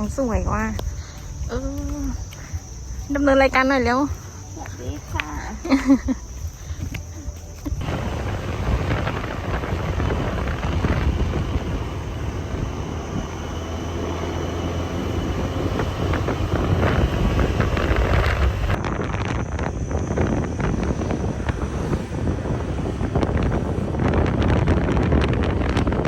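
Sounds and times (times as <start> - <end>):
engine and road rumble: 0.0 - 26.0
wind rushing over microphone: 0.0 - 26.0.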